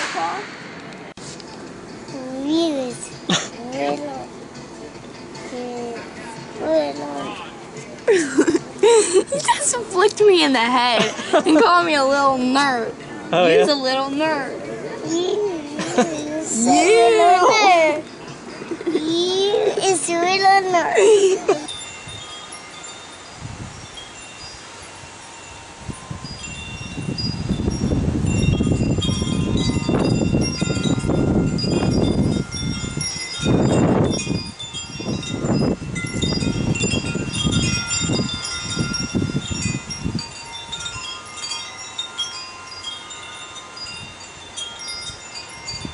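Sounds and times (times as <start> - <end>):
rushing noise: 0.0 - 2.1
wind chimes ringing: 0.0 - 45.9.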